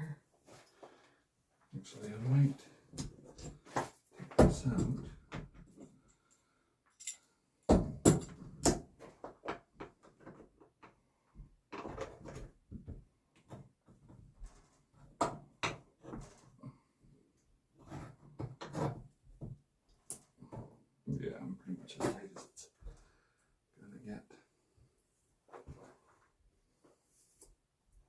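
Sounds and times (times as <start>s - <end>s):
knocks and clatter of tools and lumber: 2.0s - 6.2s, 6.9s - 16.6s, 17.8s - 23.0s.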